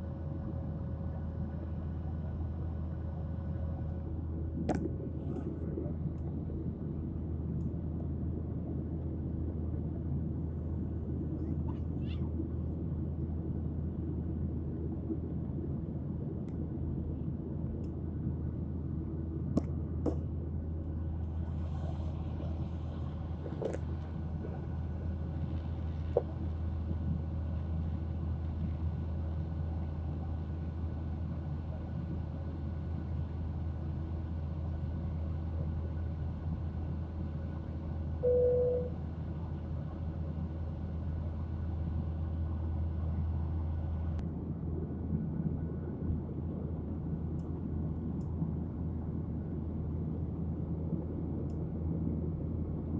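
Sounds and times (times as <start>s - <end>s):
low airplane cabin drone: 0.0s - 52.9s
short tone: 38.2s - 39.0s.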